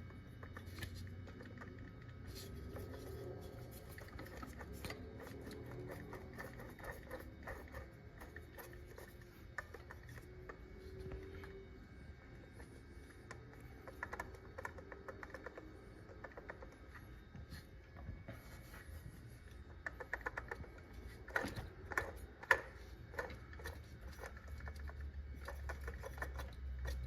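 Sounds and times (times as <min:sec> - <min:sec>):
coolant pump clicking and rattling: 0:19.8 - 0:27.0.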